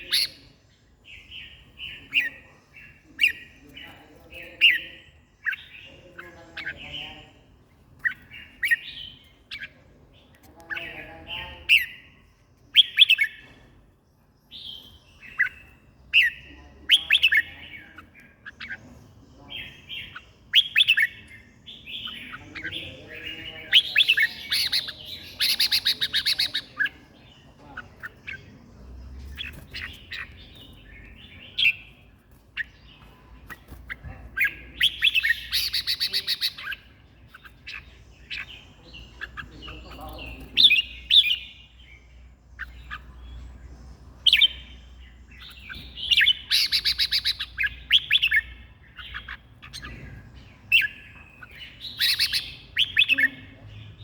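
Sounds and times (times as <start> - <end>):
songbird warbling: 0.0 - 0.5, 14.6 - 32.0, 32.6 - 53.6.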